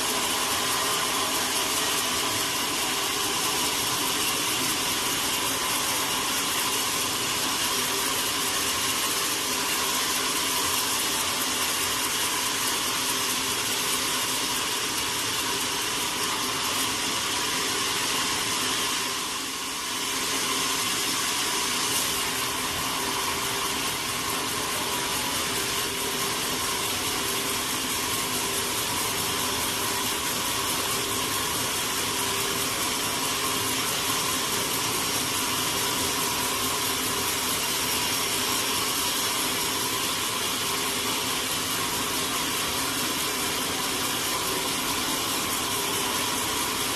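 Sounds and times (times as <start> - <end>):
sawmill machinery whirring: 0.0 - 46.9.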